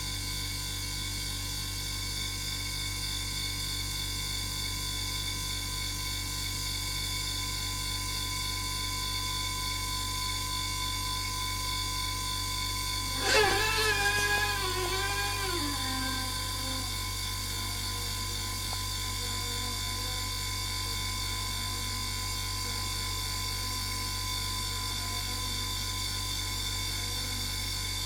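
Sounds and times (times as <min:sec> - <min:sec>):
loud wavering whine: 0:09.7 - 0:20.0
refrigerator humming: 0:09.8 - 0:21.0.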